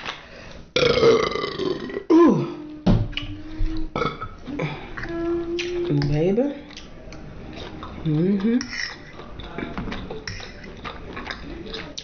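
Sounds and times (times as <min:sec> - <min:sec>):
person burping loudly: 0:00.8 - 0:02.6, 0:03.9 - 0:04.8.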